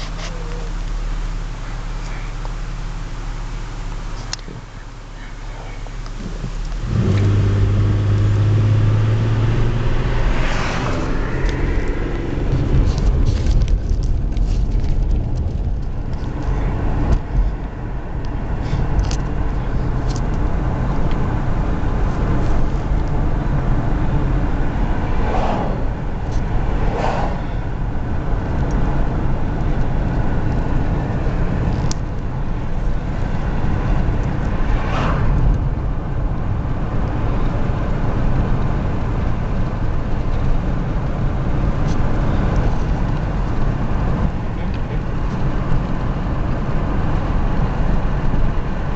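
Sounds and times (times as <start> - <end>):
car driving along road: 0.0 - 48.9
passing swishes: 25.1 - 27.6.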